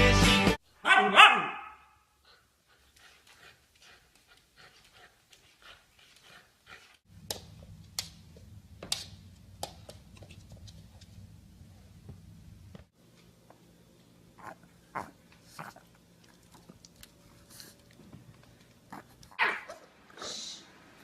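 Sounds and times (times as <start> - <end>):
dog panting: 2.2 - 7.0.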